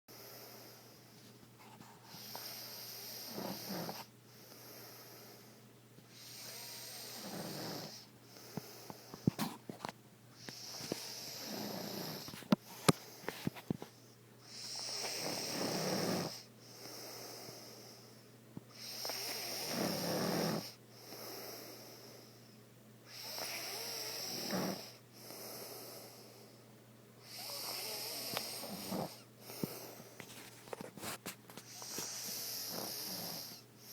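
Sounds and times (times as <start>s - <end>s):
man snoring: 2.2s - 5.4s, 6.2s - 8.1s, 10.4s - 12.4s, 14.5s - 17.6s, 18.8s - 21.9s, 23.1s - 26.2s, 27.2s - 30.0s, 31.8s - 33.6s.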